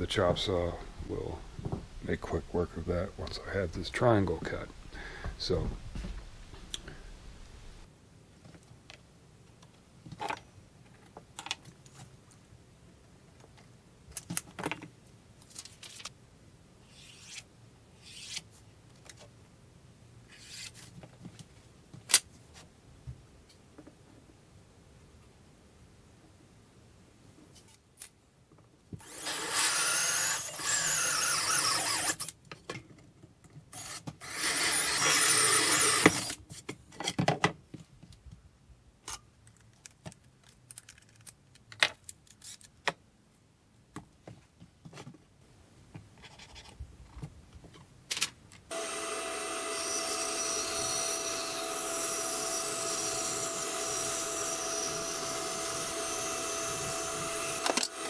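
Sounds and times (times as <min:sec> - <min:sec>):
motor whining: 0:29.0 - 0:32.2, 0:48.7 - 0:58.0
power saw cutting plywood: 0:29.0 - 0:32.3, 0:33.8 - 0:36.4, 0:48.7 - 0:58.0.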